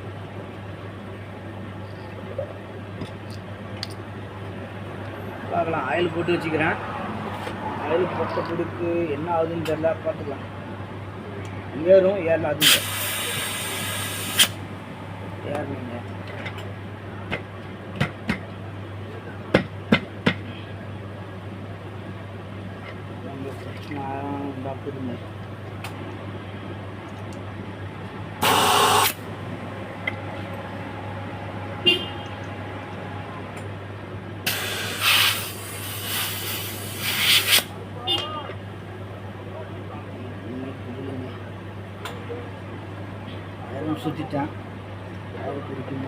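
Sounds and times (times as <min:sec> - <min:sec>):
steady low hum: 0:00.0 - 0:46.0
compressed air hissing: 0:12.6 - 0:14.6, 0:28.4 - 0:29.2, 0:34.4 - 0:37.7.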